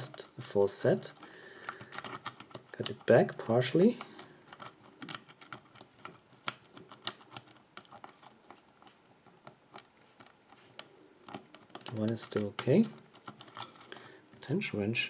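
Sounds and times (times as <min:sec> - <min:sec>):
lock pick clicking in lock: 0:01.0 - 0:08.3, 0:11.3 - 0:14.0.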